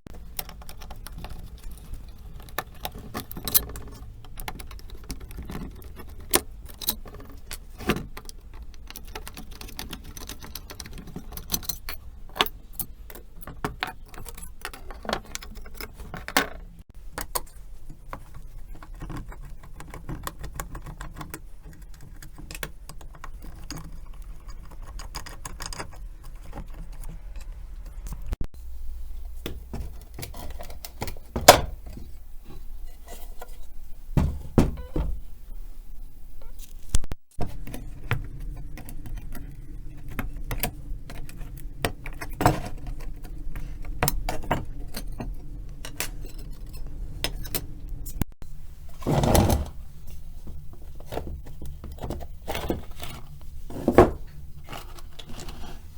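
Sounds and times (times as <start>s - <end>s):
sharp knocks: 34.2s - 35.2s.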